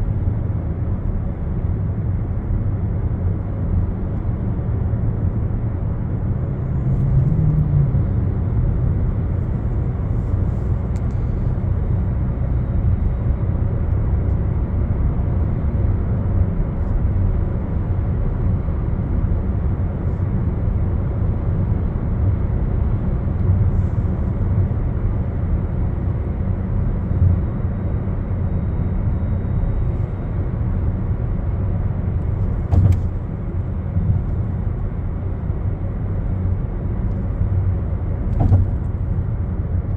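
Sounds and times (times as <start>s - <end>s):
road vehicle rumbling: 0.0s - 39.9s
brief knock: 32.7s - 33.2s, 38.3s - 38.8s.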